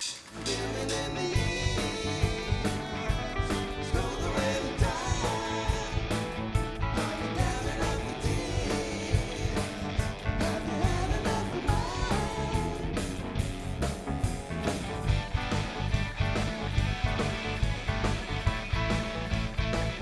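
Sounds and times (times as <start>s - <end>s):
bass and guitar: 0.3s - 20.0s
person singing: 0.4s - 13.2s
drums keeping steady beat: 1.3s - 20.0s.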